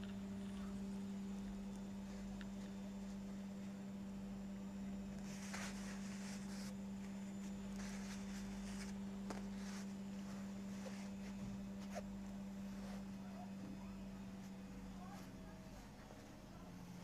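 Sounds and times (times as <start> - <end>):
steady low hum: 0.0 - 17.0
fabric rustling: 5.0 - 16.7.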